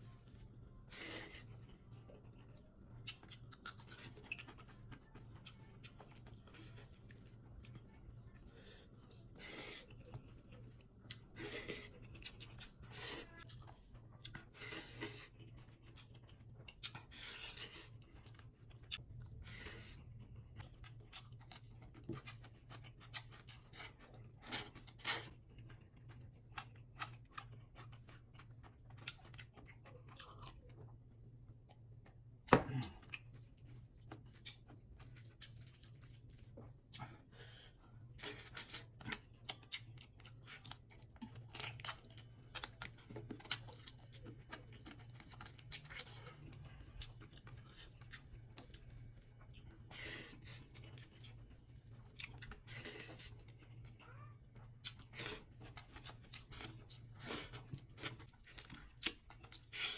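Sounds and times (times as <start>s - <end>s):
person chewing food: 0.0s - 59.9s
food crunching: 38.1s - 54.0s, 54.6s - 59.9s.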